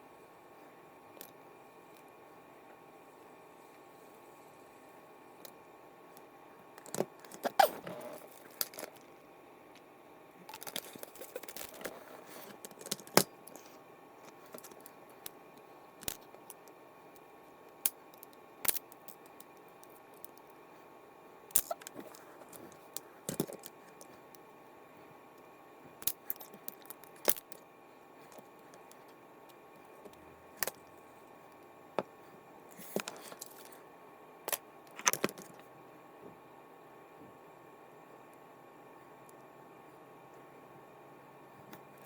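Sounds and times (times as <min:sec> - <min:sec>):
small metal parts clinking: 0:23.3 - 0:24.1.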